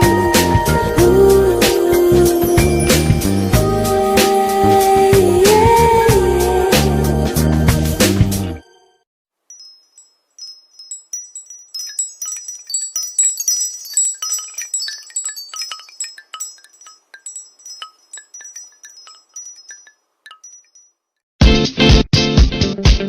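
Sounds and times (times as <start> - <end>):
high chiming ringtone notes: 9.5 - 21.0.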